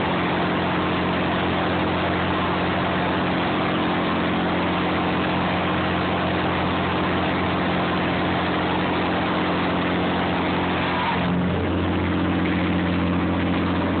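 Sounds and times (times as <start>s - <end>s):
boat engine low hum: 0.0s - 14.0s
loud even rushing noise: 8.9s - 14.0s.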